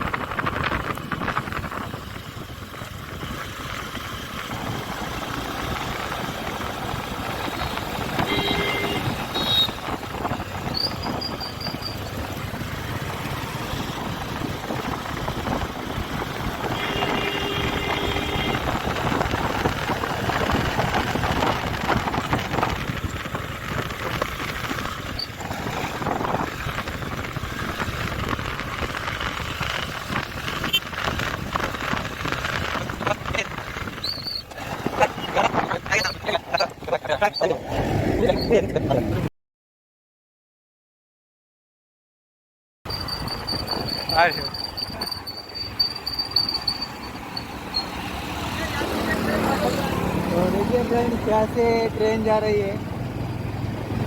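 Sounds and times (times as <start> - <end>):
motorcycle road noise: 0.0 - 39.3, 42.9 - 54.0
vehicle horn: 7.6 - 10.0, 16.6 - 19.0, 30.6 - 30.9.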